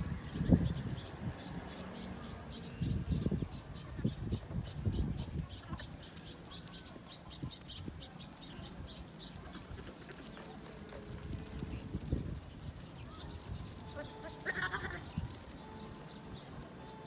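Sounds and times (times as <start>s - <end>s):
small birds chirping: 0.0s - 17.0s.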